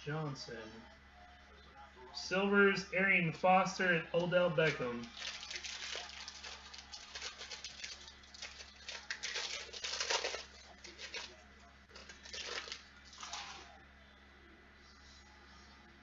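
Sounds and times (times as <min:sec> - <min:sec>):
cards rustling and clicking: 0:04.2 - 0:13.6.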